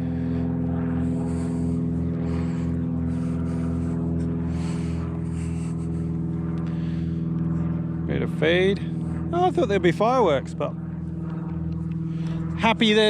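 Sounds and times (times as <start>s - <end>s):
engine idling: 0.0s - 10.4s.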